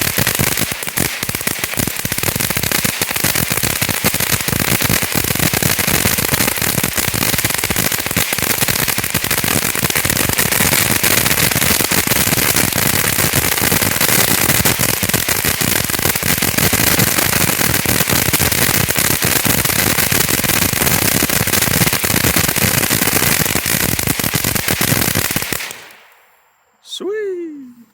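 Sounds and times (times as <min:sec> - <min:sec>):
firework fountain hissing and crackling: 0:00.0 - 0:26.2.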